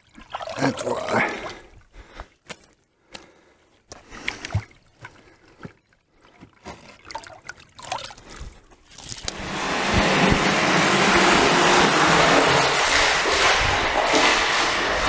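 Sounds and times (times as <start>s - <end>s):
muddy water splashing and sloshing: 0.0s - 15.0s
steady rushing noise: 9.3s - 15.0s.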